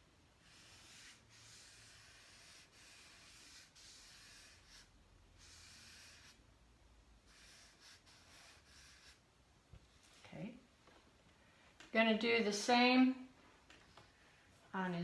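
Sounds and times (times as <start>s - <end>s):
chalk rubbing on paper: 0.4s - 6.4s, 7.3s - 9.2s.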